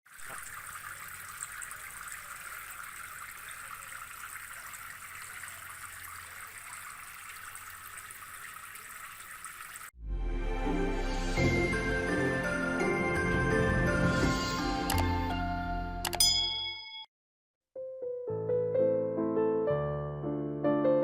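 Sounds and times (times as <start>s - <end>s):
water trickling and splashing: 0.0s - 10.0s
music: 10.0s - 16.2s, 17.8s - 21.0s.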